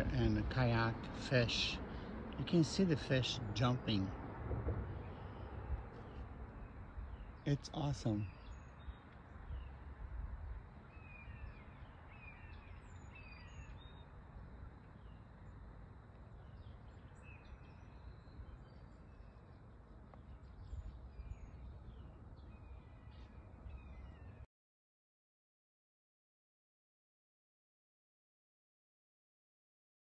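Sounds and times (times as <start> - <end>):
low outdoor rumble and hiss: 0.0 - 24.4
small birds chirping: 4.9 - 24.5.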